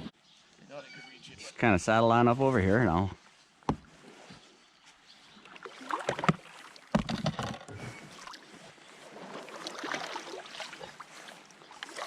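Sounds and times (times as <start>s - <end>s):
paddle splashing in water: 5.4s - 12.0s
knocks against plastic hull: 6.1s - 7.7s.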